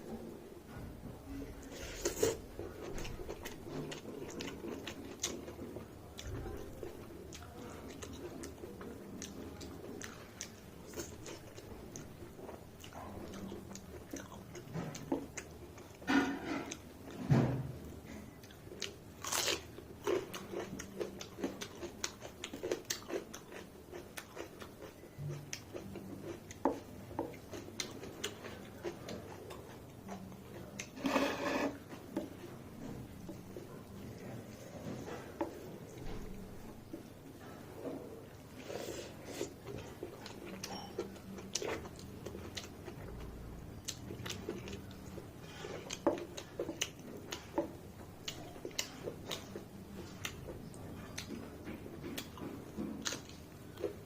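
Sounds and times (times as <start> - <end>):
person chewing food: 1.6 - 17.2, 18.1 - 54.0
food crunching: 18.4 - 37.6.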